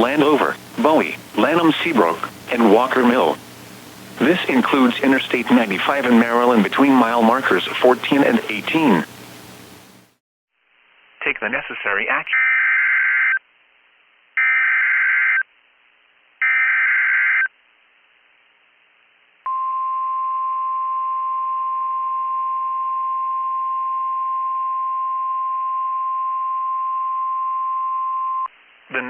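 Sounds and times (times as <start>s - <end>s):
harsh buzzing data bursts: 0.0s - 10.1s.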